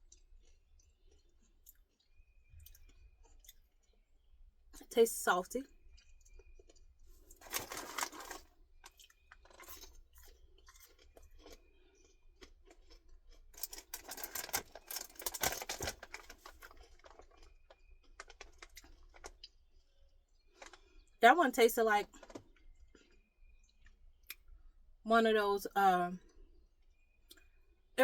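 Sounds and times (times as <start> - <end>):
person chewing popcorn: 0.0 - 4.2, 5.6 - 21.2, 22.1 - 24.6.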